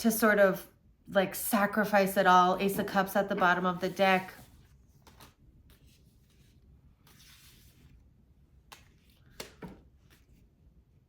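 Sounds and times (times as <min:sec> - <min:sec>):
cards sliding rustle: 0:03.6 - 0:08.0
cards clicking and tapping: 0:08.7 - 0:09.8.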